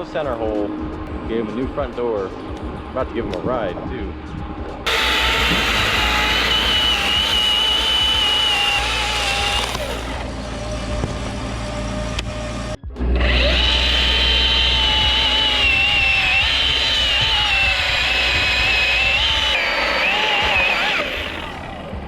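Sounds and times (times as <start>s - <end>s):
electric chainsaw cutting wood: 4.9s - 22.0s.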